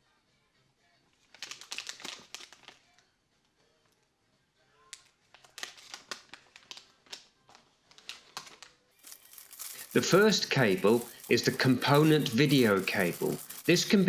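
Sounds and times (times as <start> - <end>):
plastic packaging crinkling: 1.4 - 2.8, 8.0 - 14.0.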